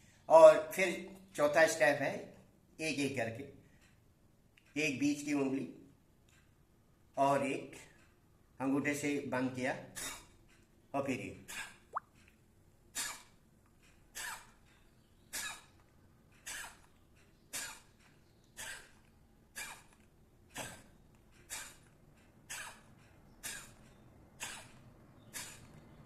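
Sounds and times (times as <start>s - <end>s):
forceful nostril exhalations: 20.6s - 26.0s.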